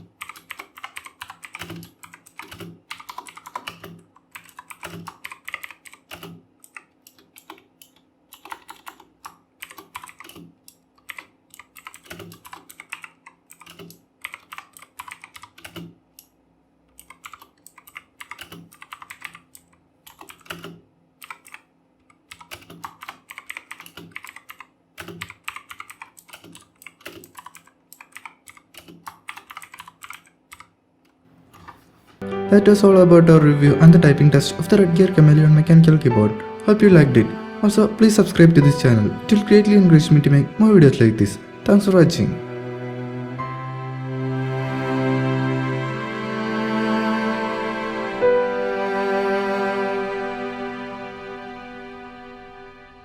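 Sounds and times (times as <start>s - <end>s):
mechanical keyboard typing: 0.0s - 16.3s, 16.9s - 30.7s.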